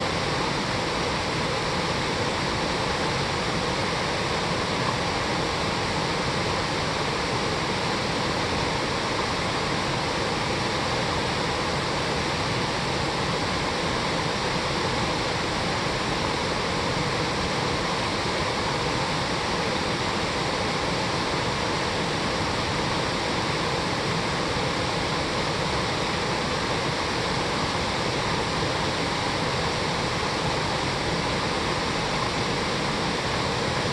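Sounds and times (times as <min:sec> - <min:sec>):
stream rushing over rocks: 0:00.1 - 0:33.9.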